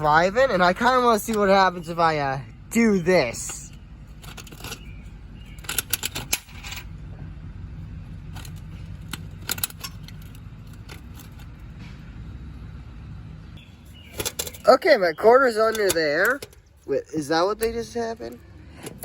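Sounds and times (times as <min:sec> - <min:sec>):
steady low rumble: 0:00.0 - 0:15.7
coin mechanism clicks and rattles: 0:05.6 - 0:06.9.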